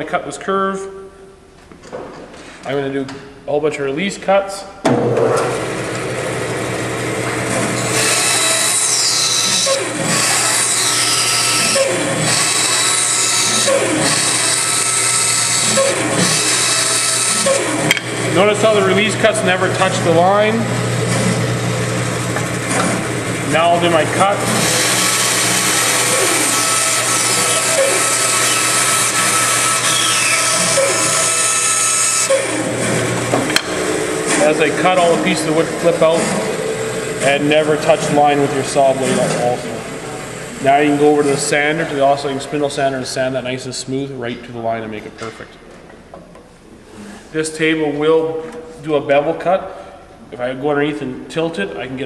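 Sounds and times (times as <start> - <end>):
band saw cutting wood: 5.2 - 42.1
band saw motor hum: 5.2 - 42.4.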